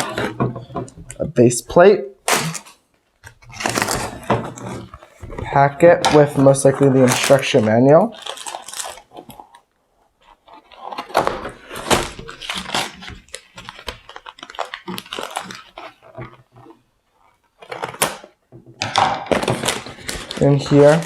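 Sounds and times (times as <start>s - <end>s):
paper packet crinkling and rustling: 2.3s - 18.4s, 19.3s - 21.0s.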